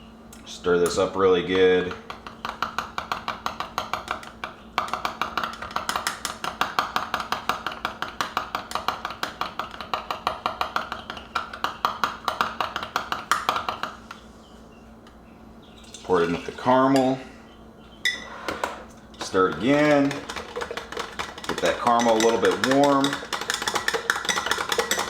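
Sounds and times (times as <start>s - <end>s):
stirrer clicking against cup: 2.0s - 13.9s, 19.2s - 25.0s.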